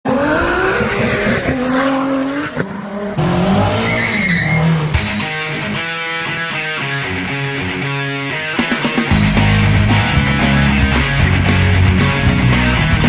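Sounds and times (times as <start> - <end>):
car engine revving: 0.0 - 6.2, 9.0 - 13.0
tire squeal: 0.1 - 5.0
rock music with electric guitar: 4.9 - 13.0.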